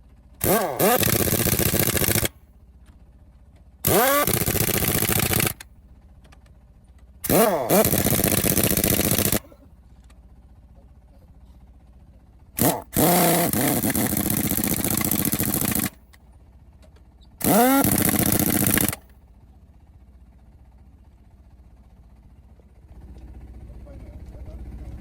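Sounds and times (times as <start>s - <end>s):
impact wrench hammering: 0.4s - 2.3s, 3.8s - 5.6s, 7.3s - 9.5s, 12.6s - 16.0s, 17.4s - 19.0s.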